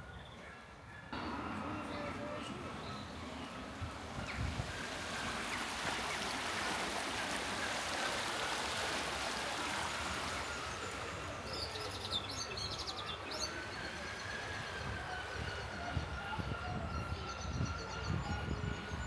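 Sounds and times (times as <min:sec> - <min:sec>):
running water rushing: 0:01.2 - 0:15.8.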